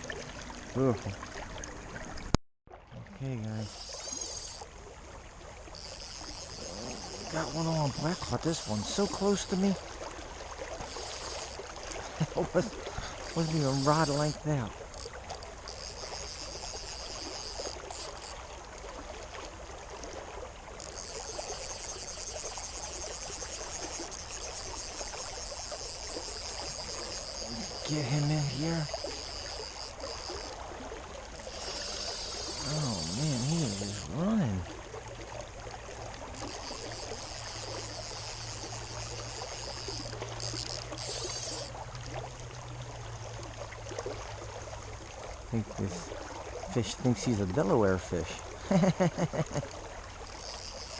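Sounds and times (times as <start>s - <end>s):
creek water rushing and splashing: 0.0s - 50.9s
high buzzing: 3.6s - 4.7s, 5.7s - 9.8s, 10.8s - 18.5s, 20.8s - 30.6s, 31.2s - 34.4s, 36.2s - 41.8s, 50.2s - 50.9s.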